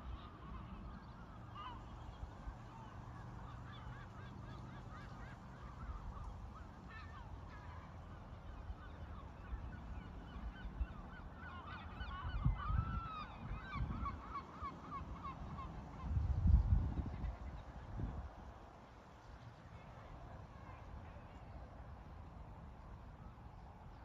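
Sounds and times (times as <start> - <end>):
birds calling: 0.0 - 16.6
wind rumbling on microphone: 8.2 - 24.0.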